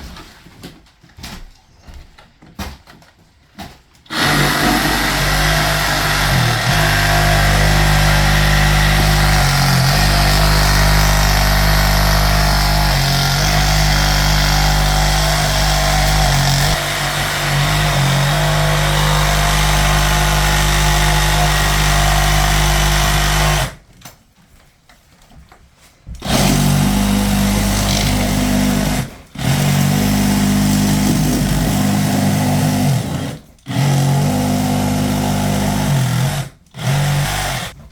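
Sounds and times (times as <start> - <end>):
power saw running under load: 4.1 - 23.8.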